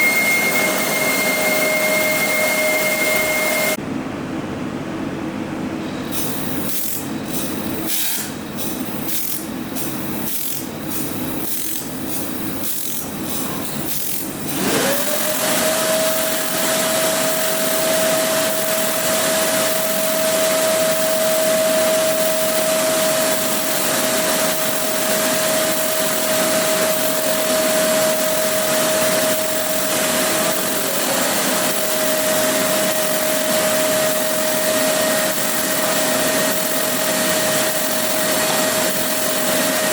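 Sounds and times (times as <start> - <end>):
steady machine hum: 0.0 - 14.6
motor whine with fan hiss: 5.8 - 39.9.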